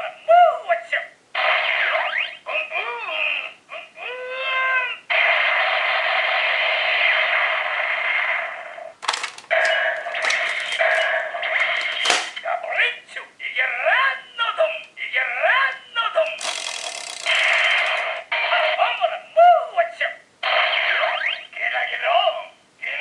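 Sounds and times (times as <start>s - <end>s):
toy electronic sound effects: 1.4s - 3.3s, 16.2s - 18.9s, 20.8s - 21.5s.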